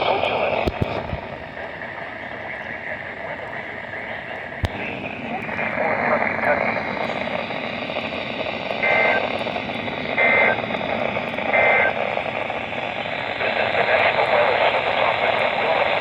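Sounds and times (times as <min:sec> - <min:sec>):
radio static hiss: 0:00.0 - 0:16.0
warbling data bursts: 0:04.6 - 0:14.1.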